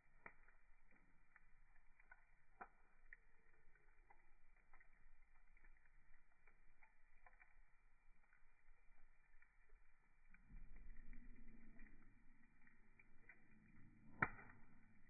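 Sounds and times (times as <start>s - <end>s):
campfire crackling: 0.0s - 15.0s.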